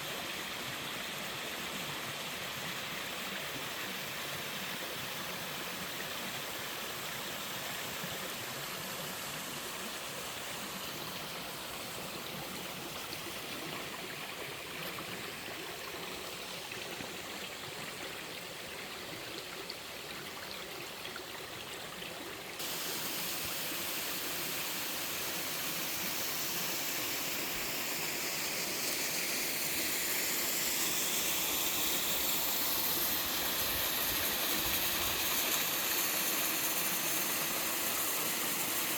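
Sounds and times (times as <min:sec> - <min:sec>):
falling water: 0:22.6 - 0:38.9.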